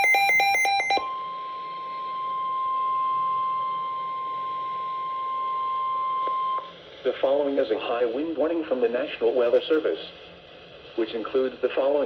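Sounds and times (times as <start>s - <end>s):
steady warning alarm tone: 0.0s - 6.6s.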